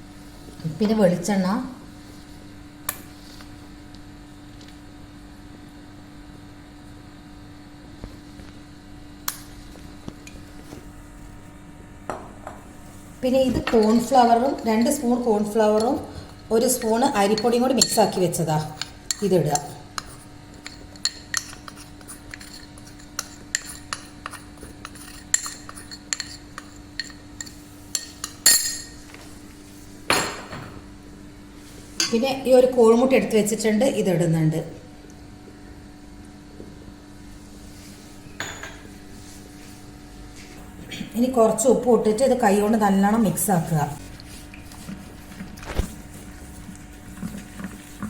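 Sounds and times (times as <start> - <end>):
steady mechanical hum: 0.0 - 48.0
spoon clinking against a bowl: 13.6 - 29.0.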